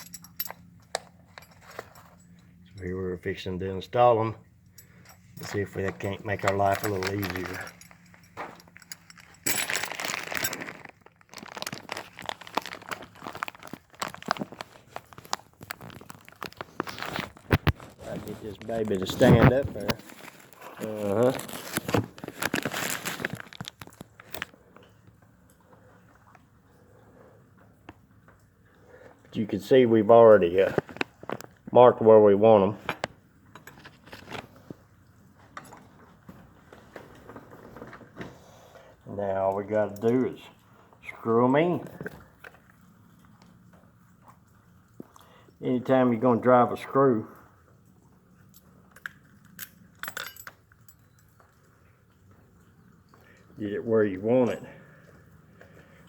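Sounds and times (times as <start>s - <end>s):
crinkling crunching handling noise: 0.0s - 3.0s, 4.6s - 26.5s, 27.6s - 32.0s, 32.7s - 46.6s
small clicks and rustles: 4.7s - 29.4s, 30.4s - 31.8s, 32.8s - 41.1s, 41.8s - 46.2s, 47.2s - 53.6s.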